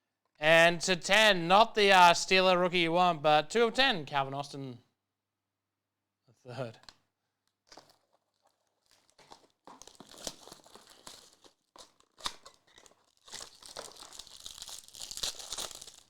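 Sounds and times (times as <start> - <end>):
foil wrapper tearing and crinkling: 7.6 - 16.0.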